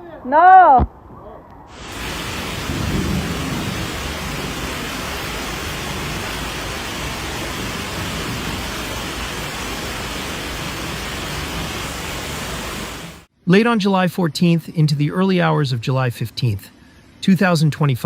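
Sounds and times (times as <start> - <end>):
flood water rushing: 1.7 - 13.3.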